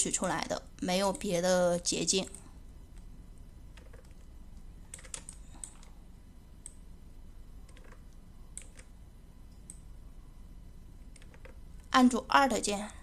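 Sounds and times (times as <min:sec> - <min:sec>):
faint low hum: 0:00.0 - 0:13.0
computer mouse clicks: 0:03.7 - 0:05.9, 0:06.6 - 0:06.8, 0:07.6 - 0:09.9, 0:11.0 - 0:11.9
keyboard keys clicking: 0:03.8 - 0:04.3, 0:04.9 - 0:05.9, 0:07.7 - 0:08.0, 0:08.6 - 0:08.9, 0:11.1 - 0:11.6.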